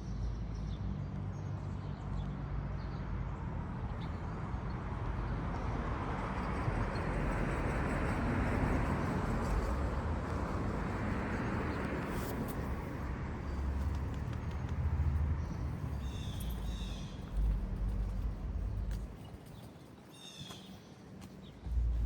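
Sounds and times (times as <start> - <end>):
vehicle passing by: 4.4 - 19.2, 21.6 - 22.0
low rumble: 12.4 - 19.3, 21.6 - 22.0.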